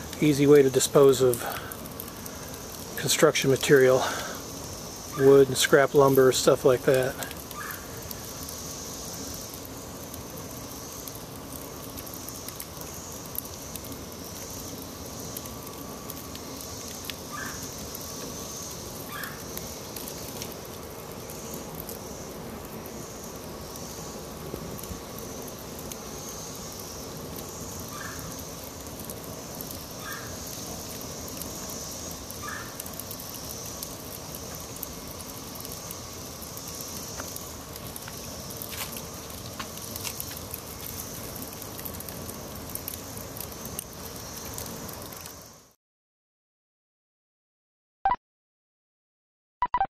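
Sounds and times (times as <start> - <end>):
high-pitched insect drone: 0.0 - 11.4, 12.2 - 20.6, 21.2 - 40.4
wood fire crackling and popping: 0.0 - 45.8.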